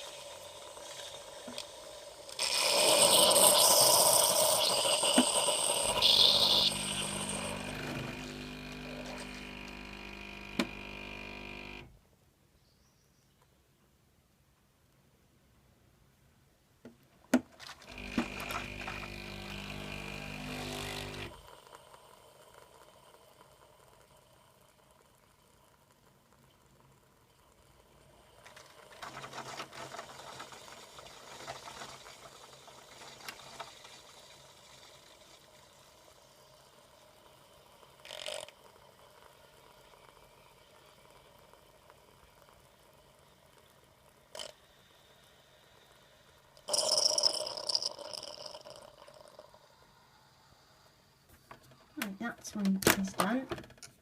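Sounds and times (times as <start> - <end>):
liquid hissing through pod: 0.0 - 9.6
pump buzzing loudly: 2.4 - 11.9, 17.8 - 21.4.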